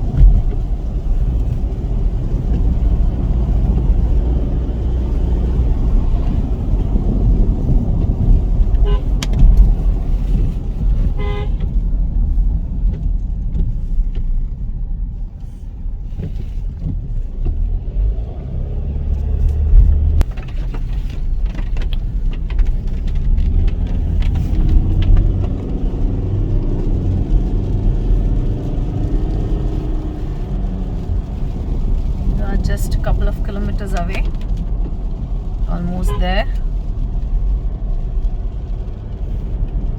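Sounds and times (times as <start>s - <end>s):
car engine and tyres rumbling: 0.0s - 39.9s
car horn toot: 8.8s - 9.2s, 11.2s - 11.7s, 35.7s - 36.6s.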